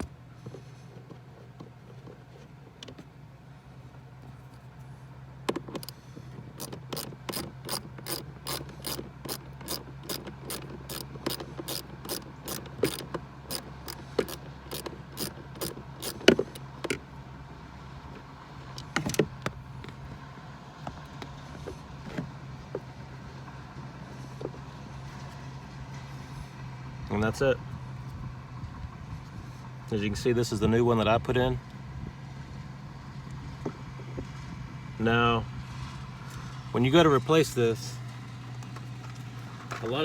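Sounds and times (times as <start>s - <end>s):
ratchet wrench clicking: 6.6s - 17.0s.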